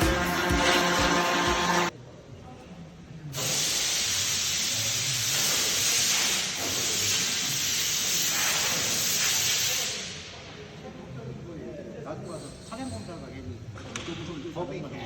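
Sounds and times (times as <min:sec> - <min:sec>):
music: 0:00.0 - 0:01.9
steady hissing noise: 0:03.3 - 0:11.1.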